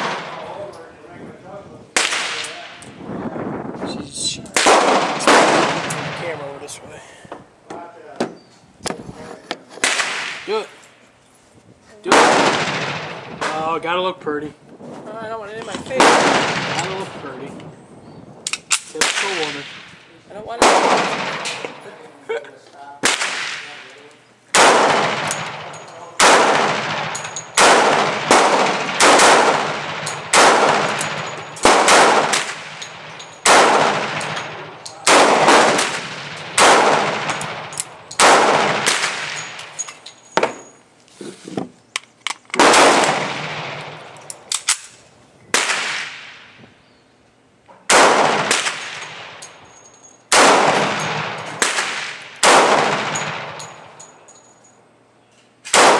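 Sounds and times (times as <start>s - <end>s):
handgun shots with echo: 24.6s - 39.6s, 50.3s - 53.8s, 55.7s - 55.9s.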